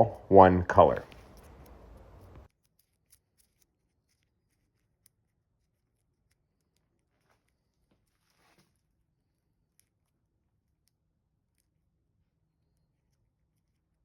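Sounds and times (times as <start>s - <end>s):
soft rustles: 7.0s - 8.9s.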